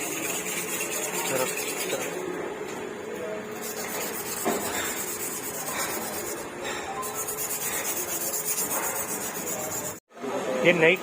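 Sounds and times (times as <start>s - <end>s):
rubbing and scraping engine parts: 0.0s - 2.4s, 3.5s - 10.0s.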